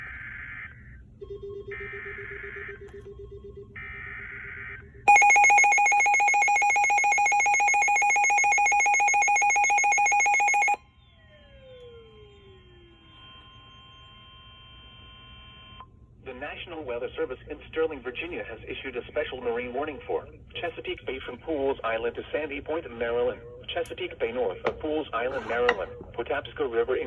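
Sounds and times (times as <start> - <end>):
two-tone attention signal: 5.1 - 10.8.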